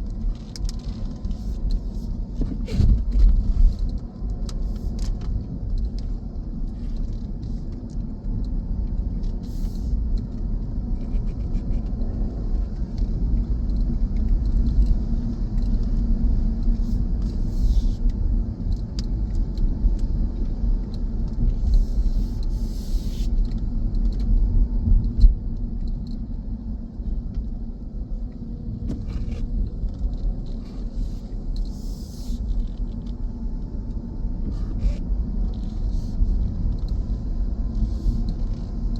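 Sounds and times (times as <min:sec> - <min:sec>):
car engine and tyre rumble: 0:00.0 - 0:38.9
light ticks: 0:03.1 - 0:17.4, 0:18.0 - 0:22.6, 0:23.3 - 0:27.5.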